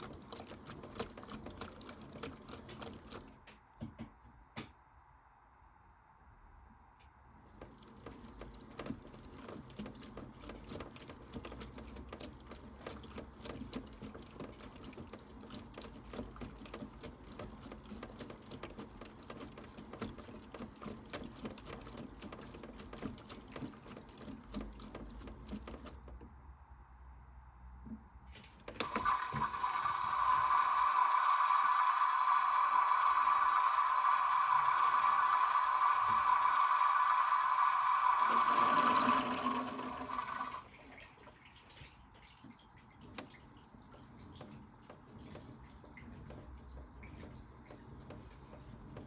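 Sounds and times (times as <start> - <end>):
water sloshing: 0.0 - 3.4
toy washing machine drum turning: 28.7 - 40.6.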